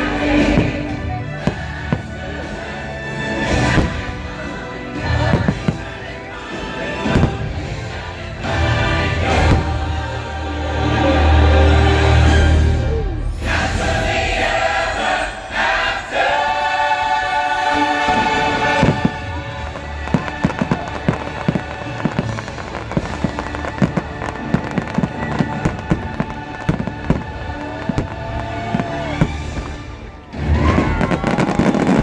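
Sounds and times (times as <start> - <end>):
fireworks bangs and crackles: 0.0 - 10.3, 17.9 - 32.0
orchestral and choral music: 0.0 - 32.0.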